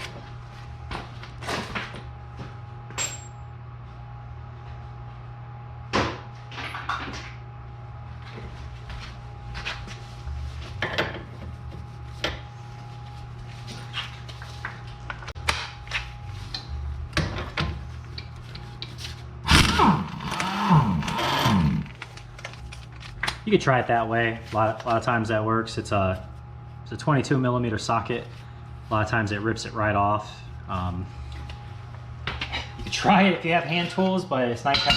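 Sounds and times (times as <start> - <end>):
steady low hum: 0.0 - 34.9.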